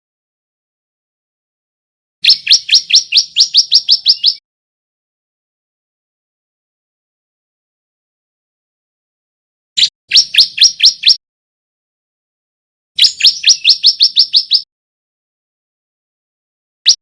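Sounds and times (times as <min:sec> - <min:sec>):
small bird chirping song: 0:02.2 - 0:04.4, 0:09.8 - 0:11.2, 0:13.0 - 0:14.7.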